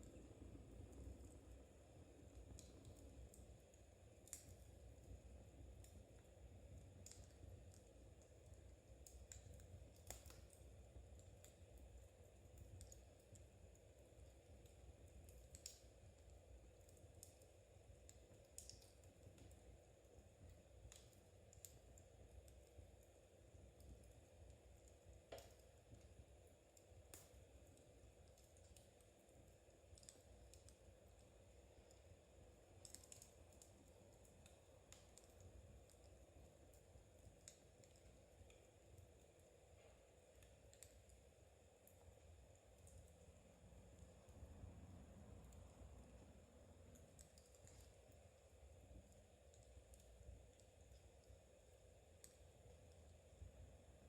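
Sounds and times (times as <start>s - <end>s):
low steady rumble: 0.0s - 54.0s
knitting needles clicking: 32.8s - 36.1s.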